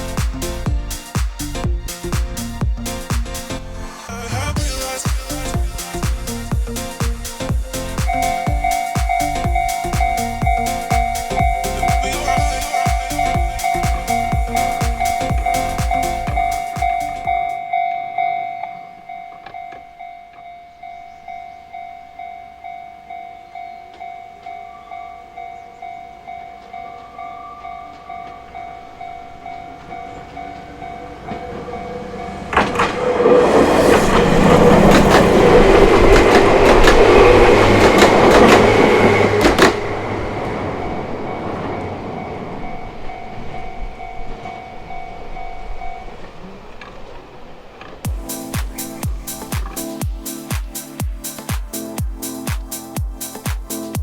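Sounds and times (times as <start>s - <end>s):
train passing: 0.0s - 54.0s
level-crossing warning bell ringing: 7.5s - 46.8s
wheels on rails: 12.9s - 48.1s
wheels clicking over rail joints: 26.6s - 40.1s.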